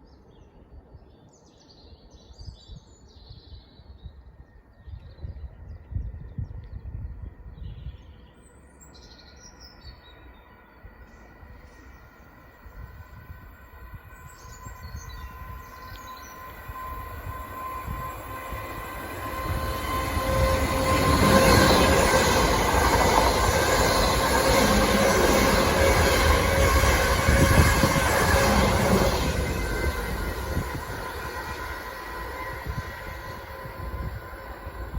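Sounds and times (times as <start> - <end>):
electric train passing: 7.2 - 34.9.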